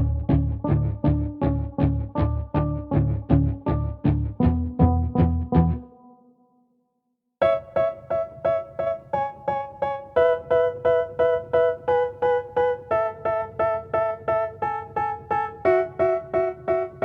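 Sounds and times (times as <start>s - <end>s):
keyboard repeating chords: 0.0s - 6.1s, 7.4s - 17.0s.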